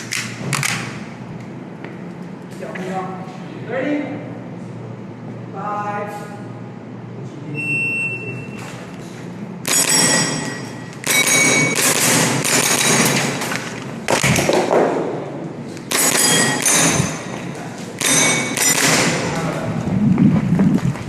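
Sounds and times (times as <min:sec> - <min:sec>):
electronic shot timer beep: 0:09.7 - 0:12.0
metallic ringing: 0:09.7 - 0:13.2, 0:15.9 - 0:19.4
airsoft pistol shots: 0:09.7 - 0:13.5, 0:18.0 - 0:19.3.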